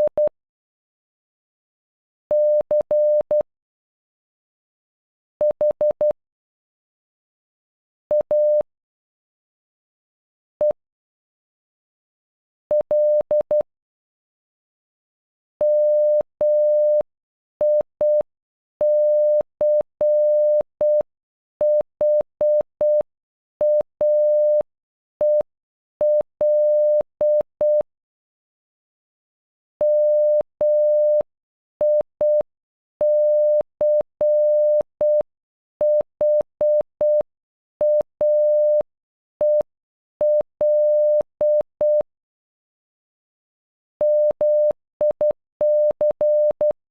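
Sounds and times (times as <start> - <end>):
morse code beeps: 18.8 - 21.0, 23.6 - 24.6, 26.0 - 27.8, 29.8 - 32.4, 33.0 - 35.2, 35.8 - 42.1, 44.0 - 46.8.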